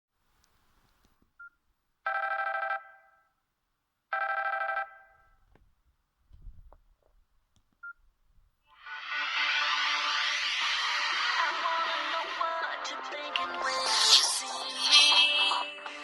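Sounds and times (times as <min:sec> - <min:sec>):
mobile phone ringing: 0:02.1 - 0:03.3, 0:04.1 - 0:05.3.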